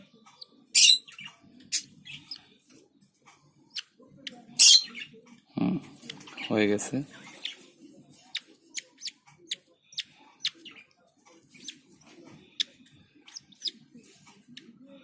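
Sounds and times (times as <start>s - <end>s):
chicks squeaking high chirps: 0.4s - 2.4s, 7.3s - 7.7s, 8.3s - 10.8s, 12.6s - 13.8s.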